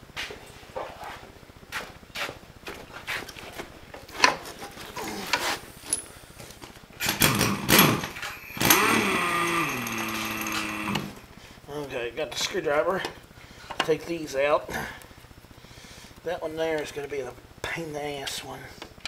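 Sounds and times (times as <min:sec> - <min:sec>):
footsteps: 0:00.0 - 0:06.8
engine cranking and starting: 0:07.0 - 0:11.3.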